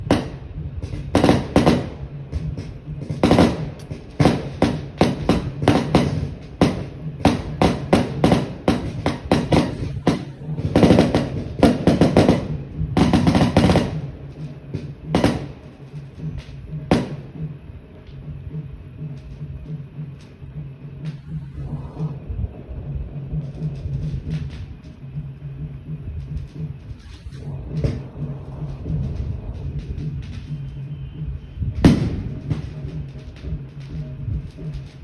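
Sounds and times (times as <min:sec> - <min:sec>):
loud drumming: 0:00.0 - 0:17.6, 0:27.5 - 0:35.0.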